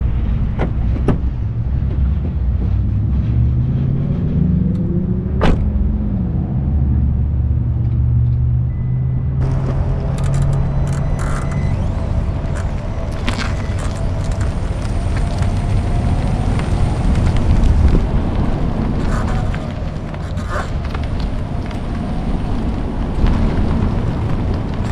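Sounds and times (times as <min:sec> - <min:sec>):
car rolling rumble: 0:00.0 - 0:24.9
wheel creaking: 0:09.4 - 0:24.9.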